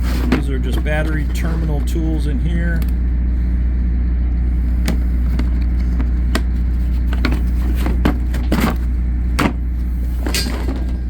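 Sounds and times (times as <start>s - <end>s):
low machine hum: 0.0s - 11.0s
metal tools clinking and knocking: 10.2s - 11.0s.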